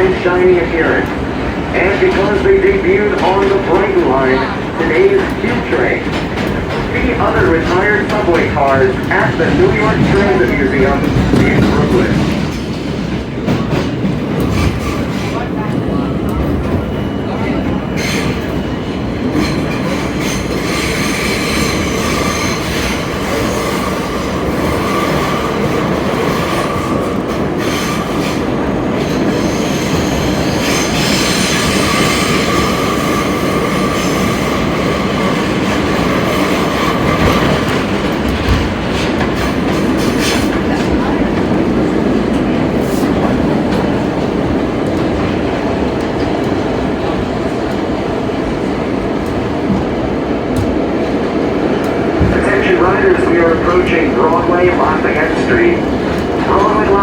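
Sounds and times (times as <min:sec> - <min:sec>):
rumble of wheels on rail: 0:00.0 - 0:57.0
clacks over rail joints: 0:00.8 - 0:15.4, 0:34.9 - 0:47.9.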